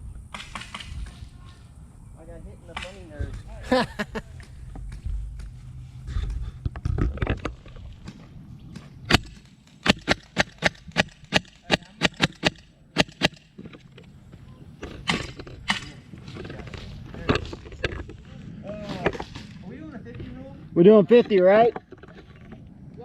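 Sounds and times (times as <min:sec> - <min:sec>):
rumbling movement noise: 0:00.0 - 0:23.0
airsoft gun shots: 0:00.3 - 0:01.2, 0:09.1 - 0:13.5.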